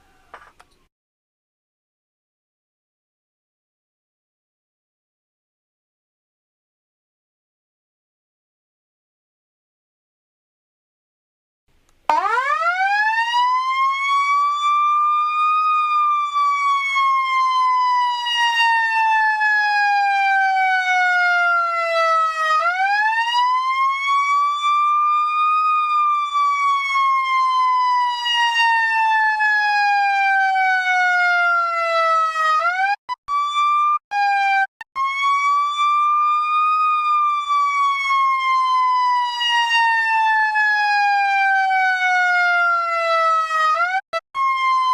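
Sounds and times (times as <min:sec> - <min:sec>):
electronic siren wail: 0:12.1 - 0:44.9.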